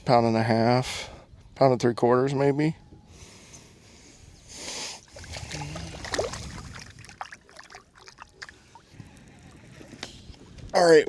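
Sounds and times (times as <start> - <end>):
water splashing against boat: 5.0 - 10.8.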